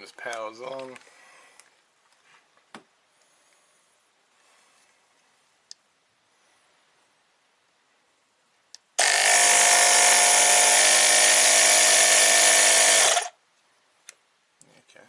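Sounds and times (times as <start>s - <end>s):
tyre inflator compressor running: 9.0s - 13.3s.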